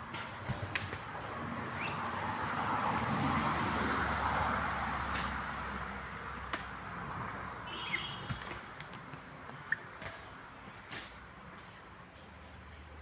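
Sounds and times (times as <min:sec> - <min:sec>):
insects trilling: 0:07.5 - 0:13.0.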